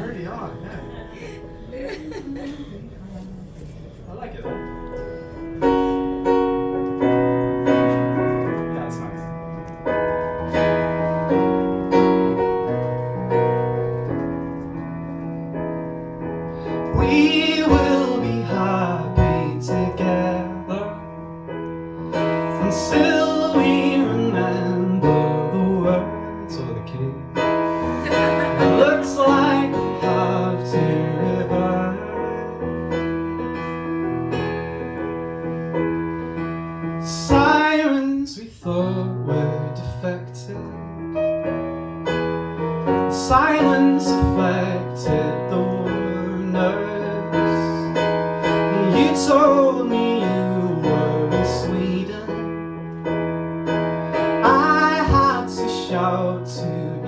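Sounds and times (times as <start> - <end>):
keyboard chords: 4.5 - 37.8.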